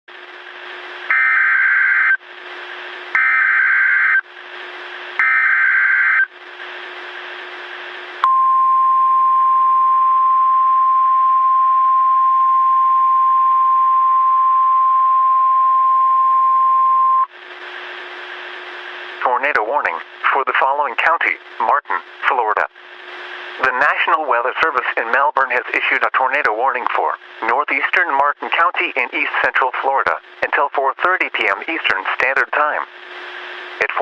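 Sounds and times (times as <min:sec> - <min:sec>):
radio hiss with faint hum: 0:01.8 - 0:08.2, 0:17.2 - 0:34.0.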